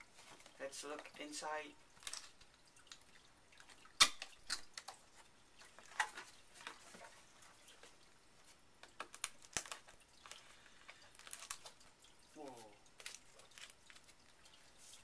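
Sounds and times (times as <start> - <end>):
cardboard packaging rustling: 5.7 - 15.0.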